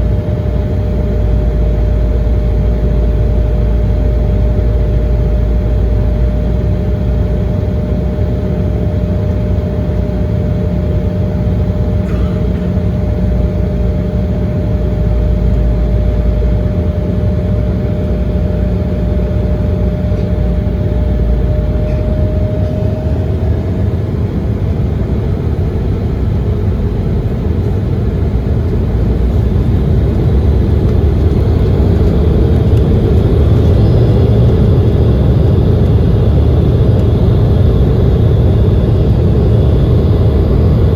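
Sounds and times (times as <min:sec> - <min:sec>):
constant hum: 0:00.0 - 0:40.9
jet engine drone in cabin: 0:00.0 - 0:40.9.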